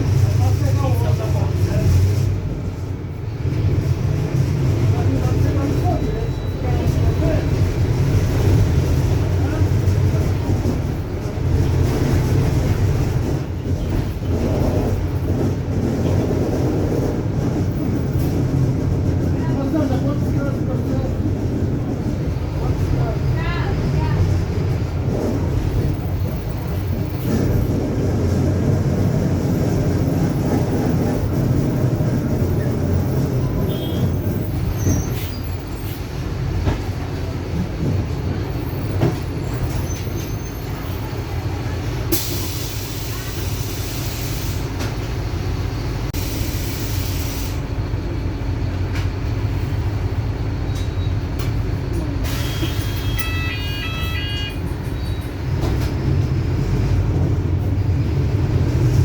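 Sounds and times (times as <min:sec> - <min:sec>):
bus diesel engine running: 0:00.0 - 0:59.0
short beeps: 0:52.5 - 0:54.6.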